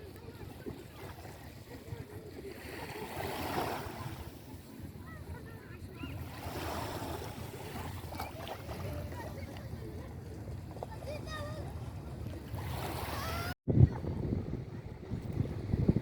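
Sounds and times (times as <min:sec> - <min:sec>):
wind rumble on microphone: 0:08.6 - 0:16.0.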